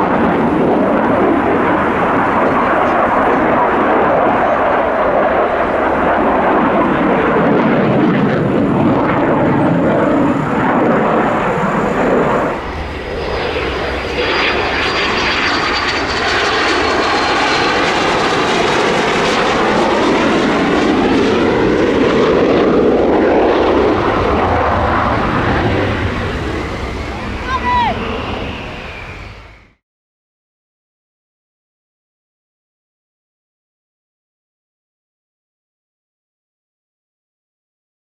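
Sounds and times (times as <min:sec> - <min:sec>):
loud jet noise: 0:00.0 - 0:29.8
high-pitched whine falling in pitch: 0:24.6 - 0:29.8.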